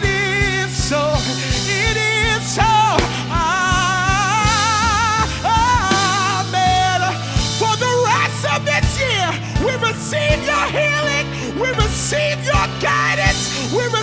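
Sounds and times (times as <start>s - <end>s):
worship band playing: 0.0s - 14.0s
sustained bass: 1.6s - 9.2s
steady drum beat: 2.6s - 7.7s.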